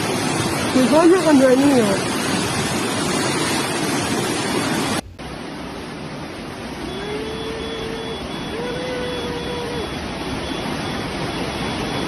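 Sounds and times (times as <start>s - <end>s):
rushing water: 0.0s - 12.0s
faint steady tone: 6.4s - 12.0s.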